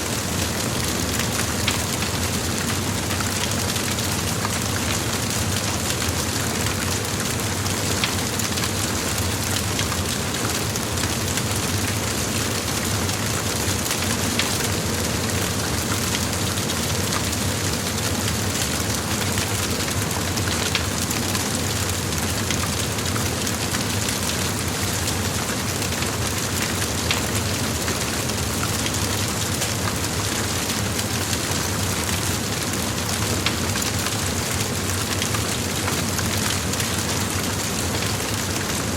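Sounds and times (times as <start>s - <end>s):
fire crackling and popping: 0.2s - 14.8s, 28.0s - 38.7s.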